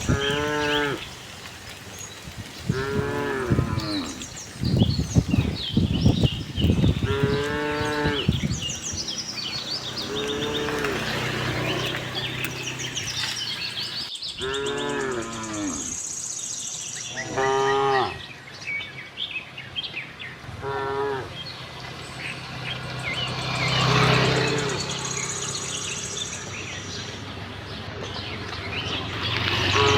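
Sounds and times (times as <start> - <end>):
cattle mooing: 0.0 - 1.0, 2.7 - 4.3, 7.0 - 8.6, 9.9 - 12.3, 17.2 - 18.2
small birds chirping: 0.0 - 20.4, 21.3 - 29.9.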